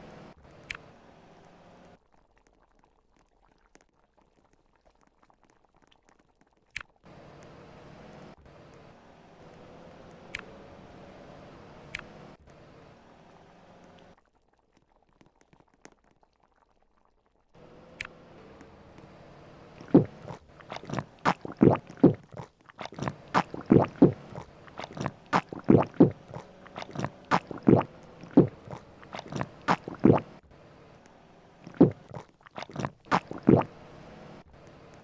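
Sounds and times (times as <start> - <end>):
person eating crunchy food: 19.8 - 30.3, 31.6 - 33.7.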